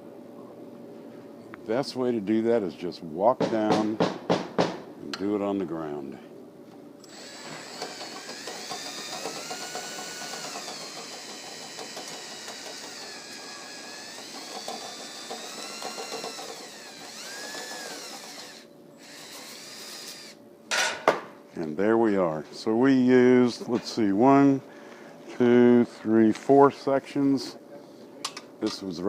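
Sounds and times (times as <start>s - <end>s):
electric drill spinning brush: 7.0s - 20.4s.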